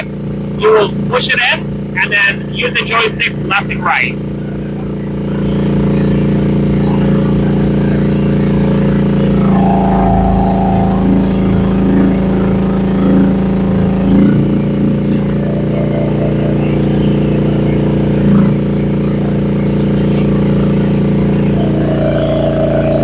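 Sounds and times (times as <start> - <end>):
higher hydraulic tone: 9.3 - 13.6.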